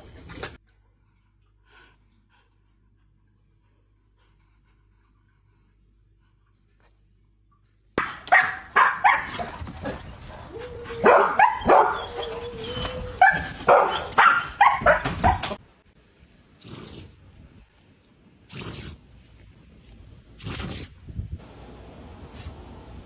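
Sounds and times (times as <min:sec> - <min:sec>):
dog barking and yelping: 0:08.0 - 0:15.6.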